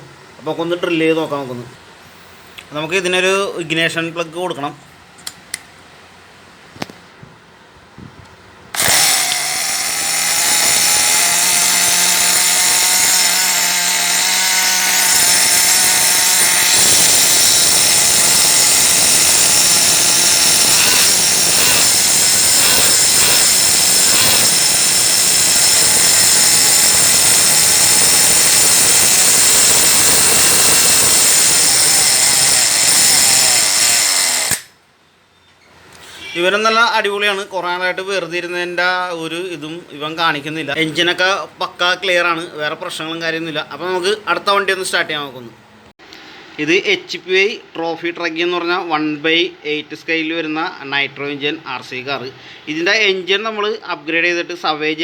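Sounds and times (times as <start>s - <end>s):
small nitro engine buzzing: 8.8s - 34.7s.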